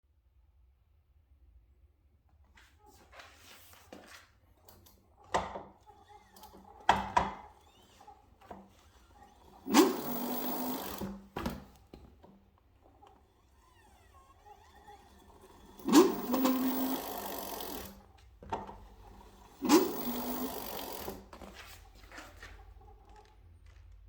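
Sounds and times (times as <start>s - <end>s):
mechanical grinding: 9.1s - 11.4s, 13.2s - 21.4s.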